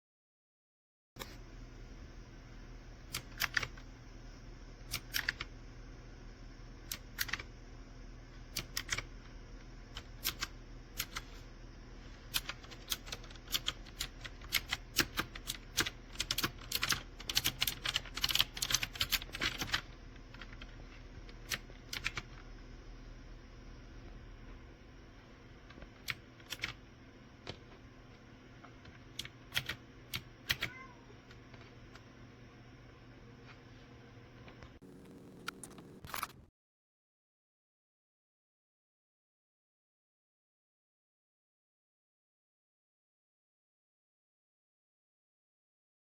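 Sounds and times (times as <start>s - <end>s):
mechanical keyboard typing: 3.1s - 3.8s, 4.9s - 5.5s, 6.8s - 7.5s, 8.5s - 9.1s, 9.9s - 11.4s, 12.3s - 22.4s, 25.8s - 26.8s, 29.1s - 30.8s, 34.8s - 36.5s.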